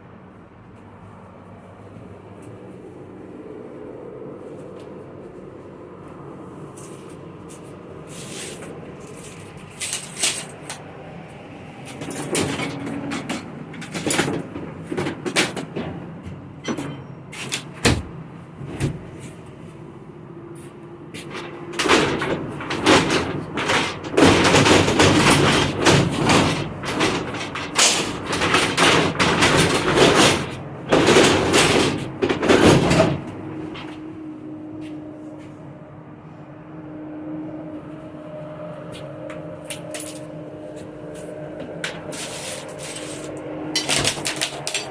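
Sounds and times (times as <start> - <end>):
shutter panels clattering and scraping: 8.1 - 10.9, 11.9 - 16.1, 21.2 - 34.0, 39.7 - 40.4, 41.2 - 44.9.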